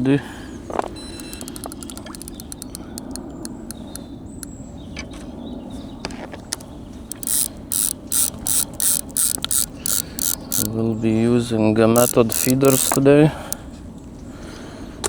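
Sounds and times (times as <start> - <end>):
fishing reel ratchet clicking: 1.2 - 4.0, 7.1 - 10.9, 11.9 - 13.6.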